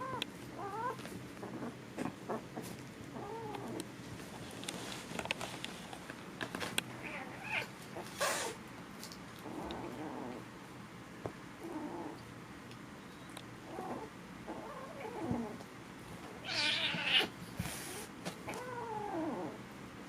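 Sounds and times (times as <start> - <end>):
kittens crying: 16.4 - 17.3.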